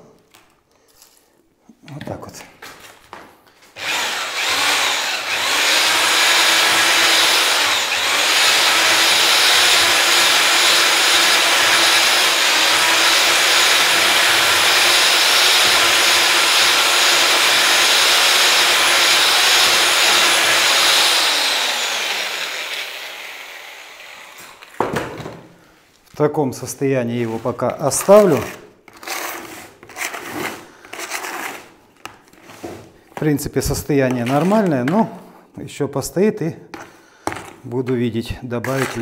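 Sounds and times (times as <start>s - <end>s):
electric drill mixer running: 3.8s - 24.7s.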